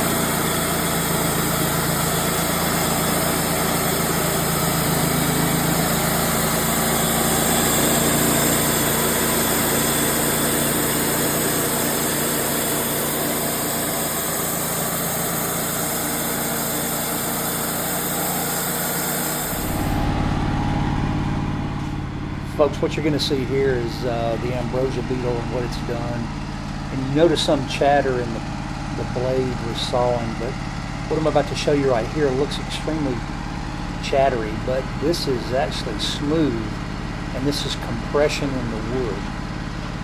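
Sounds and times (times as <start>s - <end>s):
band blade cutting log hiss: 0.0s - 20.0s
sawmill engine drone: 0.0s - 40.0s.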